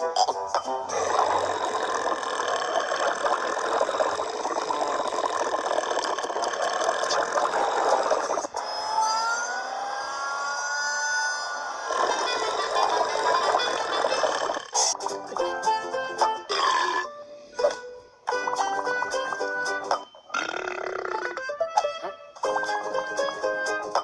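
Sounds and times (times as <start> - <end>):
long rough burp: 0.9 - 8.4, 11.7 - 15.0, 16.5 - 17.2, 20.3 - 21.4.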